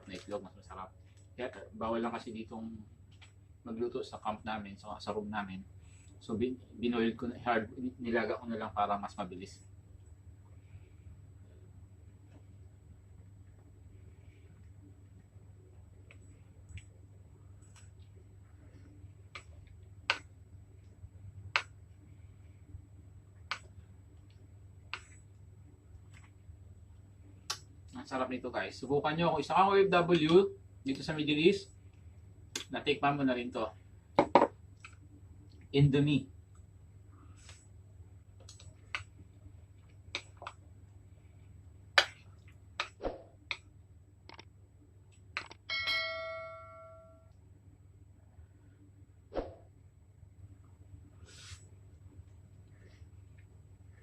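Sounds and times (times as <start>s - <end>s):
low steady hum: 0.0s - 54.0s
eating clicks and smacks: 39.9s - 40.6s
ringing ding: 45.7s - 47.3s.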